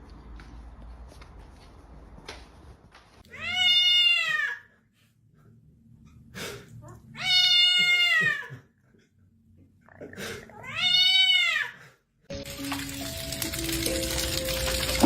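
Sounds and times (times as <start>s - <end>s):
cat meowing: 3.3s - 4.6s, 7.1s - 8.5s, 10.5s - 11.8s.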